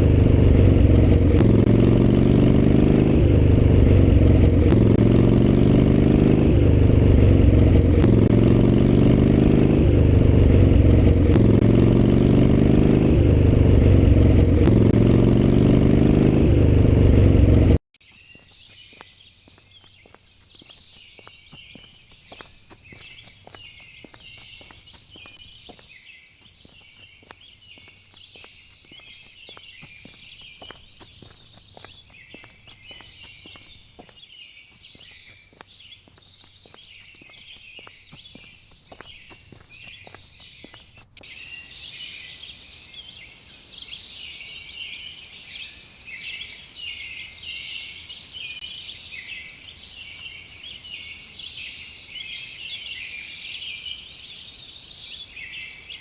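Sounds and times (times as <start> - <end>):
insects and birds chirping: 18.0 - 56.0.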